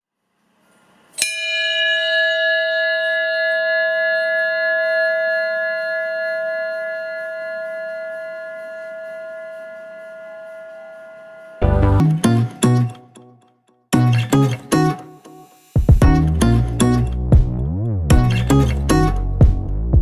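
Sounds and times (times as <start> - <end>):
ship's bell clang and ringing: 1.2 - 8.0.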